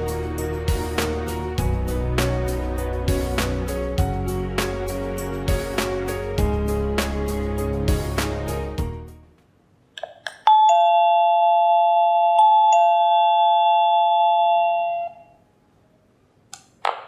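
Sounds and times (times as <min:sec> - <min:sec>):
doorbell ding dong chime: 0:10.5 - 0:15.4.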